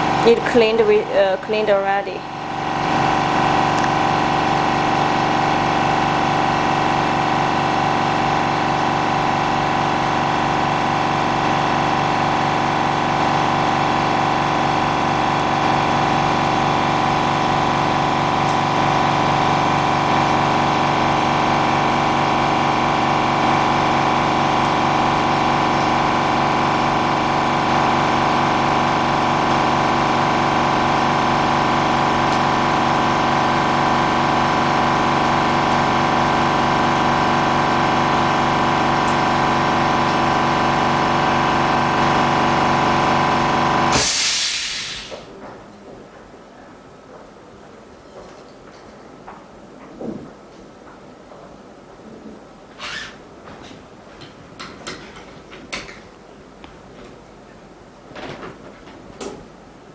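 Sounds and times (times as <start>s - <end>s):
electric air pump humming: 0.0s - 45.4s.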